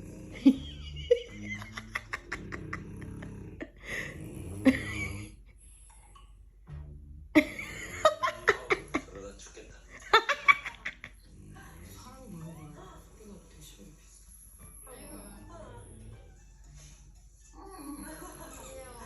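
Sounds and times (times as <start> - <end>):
dog snoring: 0.0 - 6.4, 11.0 - 12.7, 14.2 - 19.0.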